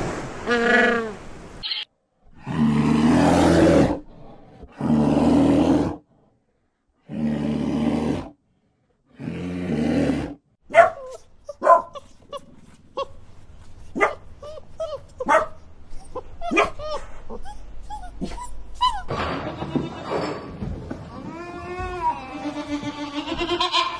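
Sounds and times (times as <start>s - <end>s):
dog yelps: 10.7s - 13.1s, 14.0s - 19.1s.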